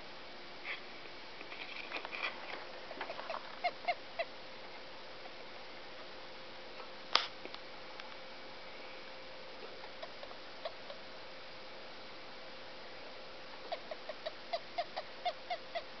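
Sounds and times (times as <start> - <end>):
hamster hiccuping: 3.0 - 4.4, 9.7 - 11.0, 13.6 - 15.9.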